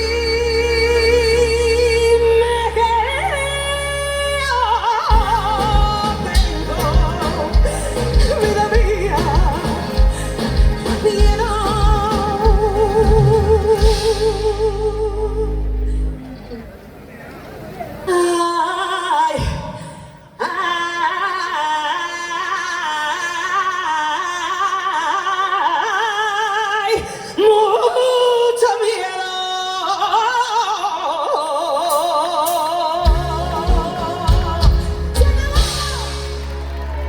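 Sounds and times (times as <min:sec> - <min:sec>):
bass and drum beat: 0:05.1 - 0:15.2, 0:33.0 - 0:37.0.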